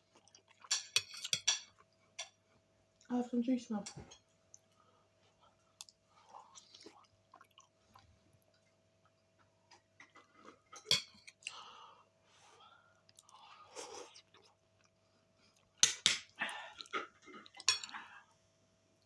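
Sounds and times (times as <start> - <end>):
person chewing food: 0.0 - 2.2, 4.5 - 12.1, 12.8 - 18.2.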